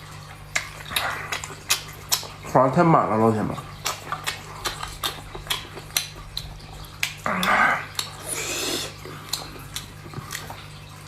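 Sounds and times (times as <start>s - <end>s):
small wet clicks: 3.6s - 8.2s
person slurping snails: 7.0s - 10.5s.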